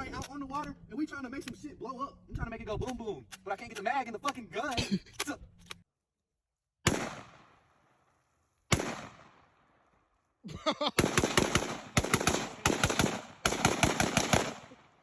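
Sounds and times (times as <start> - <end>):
gunshots with long echo: 6.8 - 10.0, 11.0 - 15.0
rapid gunfire: 6.9 - 7.5, 8.7 - 9.4, 11.0 - 14.8.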